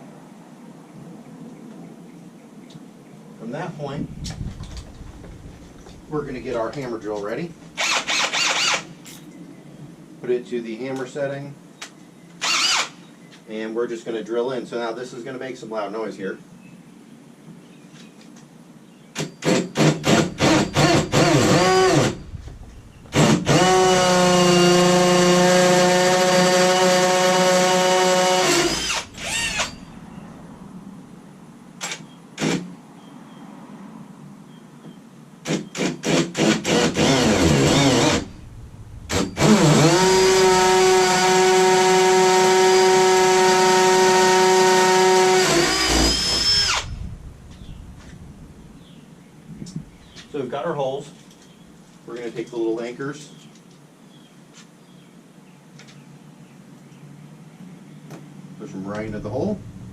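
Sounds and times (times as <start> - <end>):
hammer drill drilling into brick: 7.8 - 8.9, 12.4 - 12.9, 19.4 - 22.2, 22.9 - 29.9, 35.5 - 38.4, 39.1 - 47.7.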